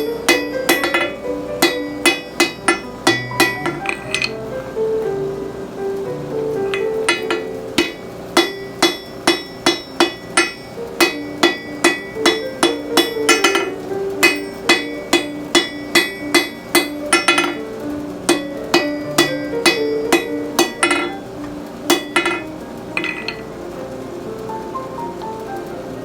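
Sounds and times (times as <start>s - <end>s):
hammer striking steel on anvil: 0.0s - 4.4s, 6.7s - 21.2s, 21.9s - 23.4s
background music: 0.0s - 26.0s.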